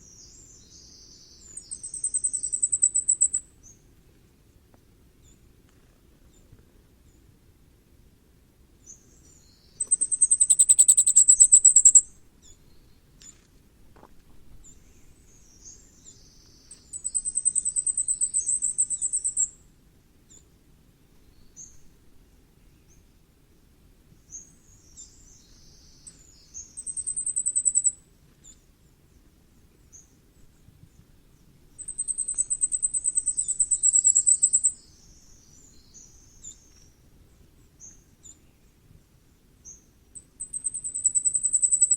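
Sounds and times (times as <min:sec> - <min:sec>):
soft high bird call notes: 0:00.0 - 0:03.8, 0:08.9 - 0:12.9, 0:39.7 - 0:41.9
bird singing high thin notes: 0:09.8 - 0:12.1.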